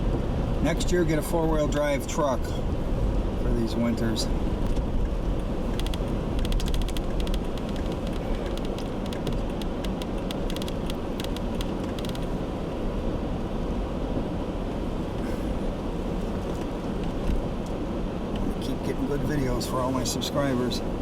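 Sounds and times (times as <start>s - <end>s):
road and engine rumble: 0.0s - 21.0s
rapid irregular clicking: 5.4s - 12.4s.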